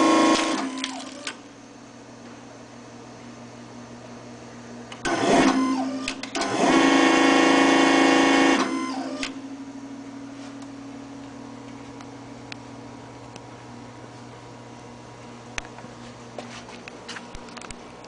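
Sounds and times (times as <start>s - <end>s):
hydraulic pump whining: 0.0s - 1.4s, 5.0s - 9.4s
low machine hum: 0.0s - 18.0s.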